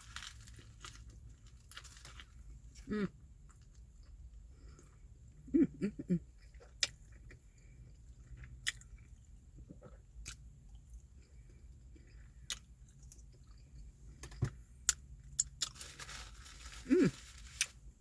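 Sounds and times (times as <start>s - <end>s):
chewing with wet mouth smacks: 6.3s - 13.9s.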